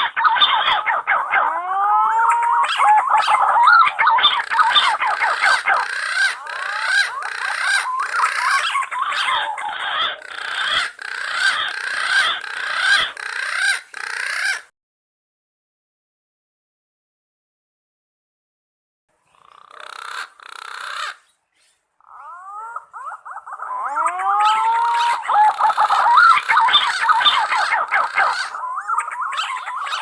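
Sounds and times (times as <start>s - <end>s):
pigeons whistling calls: 0.0s - 14.6s, 22.1s - 30.0s.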